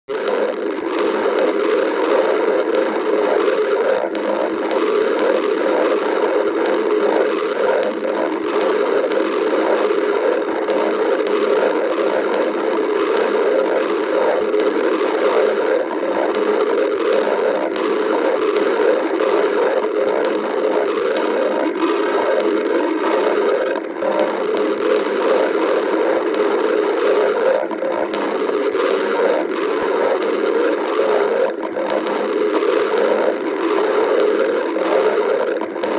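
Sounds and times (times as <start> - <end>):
stomach growling: 0.1 - 35.9.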